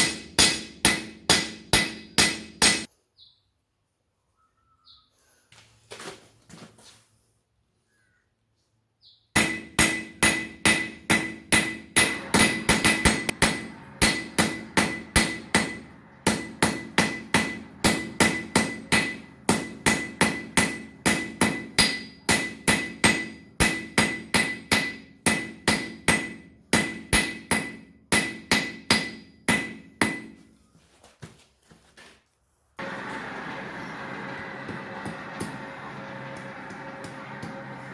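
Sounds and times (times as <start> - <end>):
hammer striking steel on anvil: 0.0 - 2.9, 9.4 - 30.4, 34.6 - 37.9.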